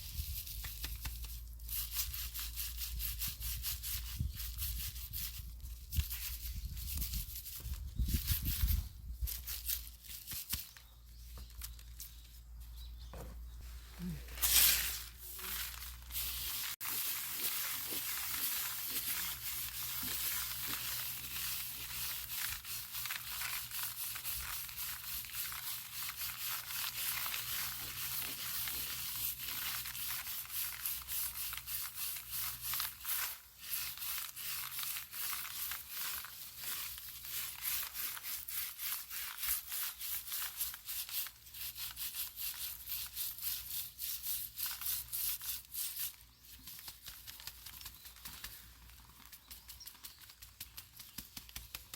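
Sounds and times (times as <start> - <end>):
dry plants being threshed: 13.6 - 51.9.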